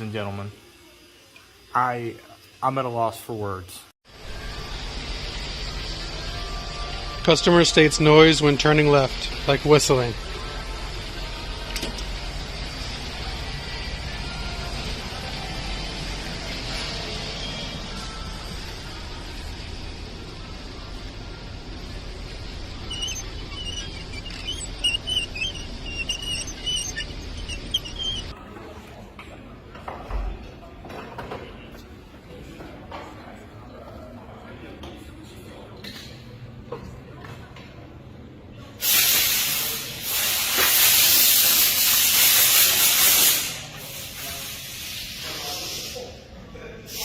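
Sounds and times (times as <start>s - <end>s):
high chirping squeak: 22.7s - 28.3s
hissing spray: 38.8s - 46.1s.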